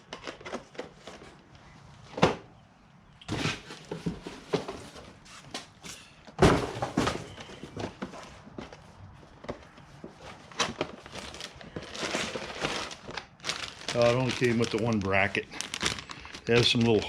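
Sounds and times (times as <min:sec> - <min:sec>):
box thunks and knocks: 0:06.4 - 0:08.1
packaging rustling: 0:07.3 - 0:17.0.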